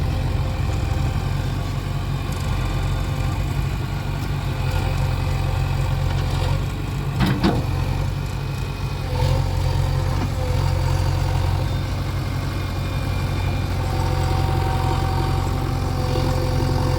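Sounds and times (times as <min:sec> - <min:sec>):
heavy diesel engine running: 0:00.0 - 0:16.9.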